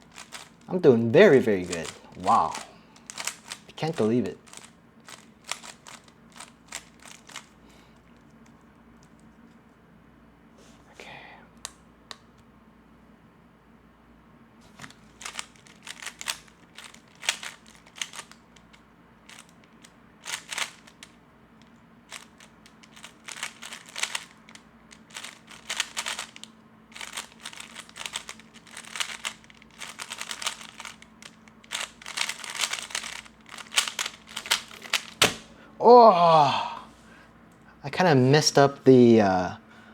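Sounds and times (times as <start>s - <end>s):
puzzle cube plastic clicking: 0.0s - 0.7s, 1.4s - 7.5s, 14.8s - 21.2s, 22.1s - 35.5s.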